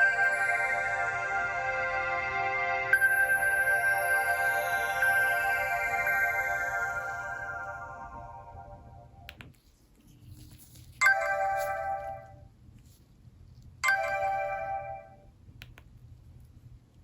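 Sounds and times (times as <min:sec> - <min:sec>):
chime-like phone ringtone: 0:00.0 - 0:09.3, 0:11.0 - 0:12.4, 0:13.8 - 0:15.3.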